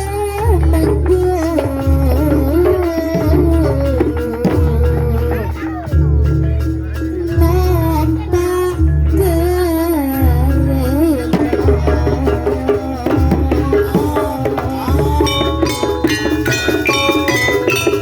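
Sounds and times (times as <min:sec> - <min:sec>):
drums heavy beat: 0:00.0 - 0:18.0
ringing gamelan notes: 0:00.0 - 0:18.0
wavering lead melody: 0:10.8 - 0:18.0.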